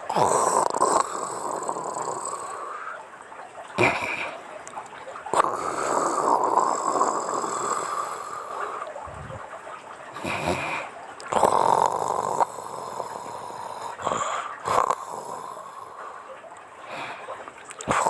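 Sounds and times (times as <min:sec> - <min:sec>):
woman snoring: 0:00.1 - 0:02.6.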